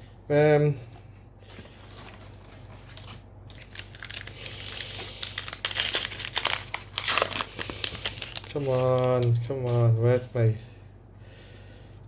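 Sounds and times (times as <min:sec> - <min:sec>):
cards rustling: 0:01.4 - 0:09.8
foil wrapper crinkling: 0:01.5 - 0:09.5.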